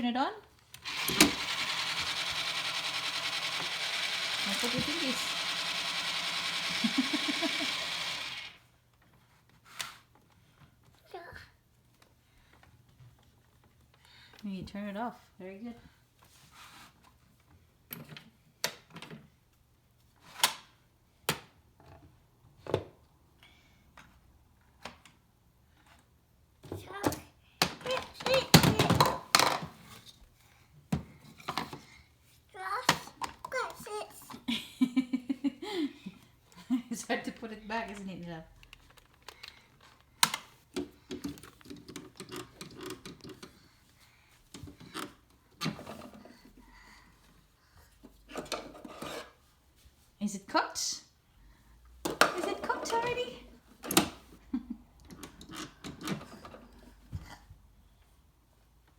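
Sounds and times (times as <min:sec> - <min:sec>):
plastic toy pieces clicking: 0:00.8 - 0:08.6.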